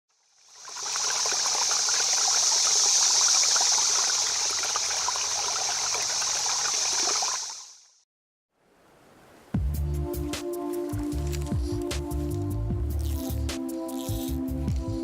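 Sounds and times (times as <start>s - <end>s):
stream burbling over stones: 0.3s - 8.0s.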